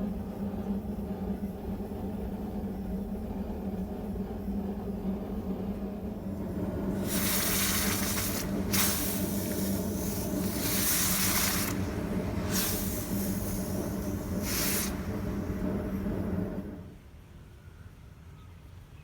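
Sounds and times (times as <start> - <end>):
steady low hum: 0.0 - 17.0
hot steel hissing in water: 6.1 - 17.0.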